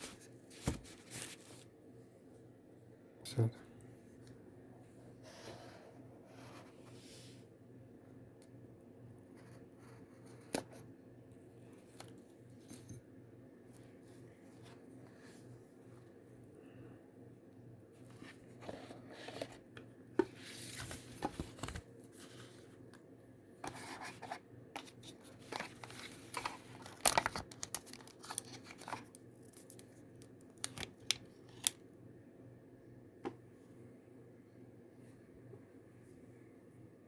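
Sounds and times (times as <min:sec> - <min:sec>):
packaging rustling and tearing: 0:24.8 - 0:31.8.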